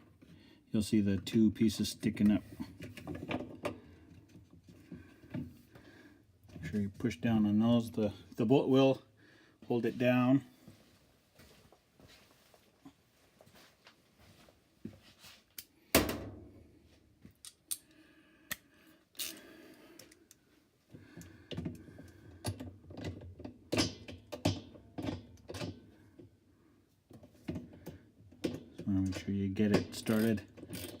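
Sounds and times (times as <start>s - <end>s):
plastic and metal parts clicking: 27.1s - 31.0s.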